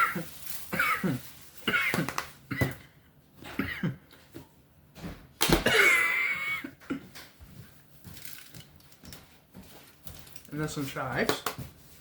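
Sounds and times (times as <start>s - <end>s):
man coughing: 3.5s - 4.0s, 5.6s - 7.2s.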